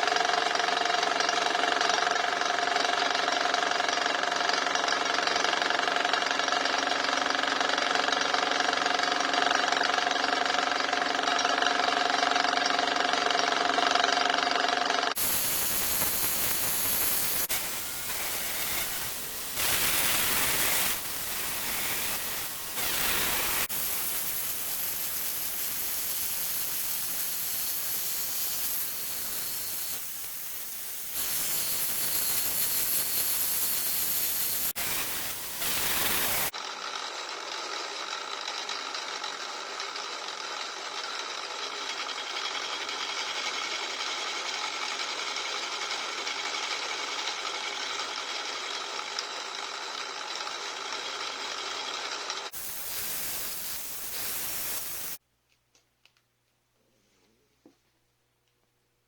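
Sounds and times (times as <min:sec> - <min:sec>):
milling machine cutting metal: 0:15.1 - 0:36.5.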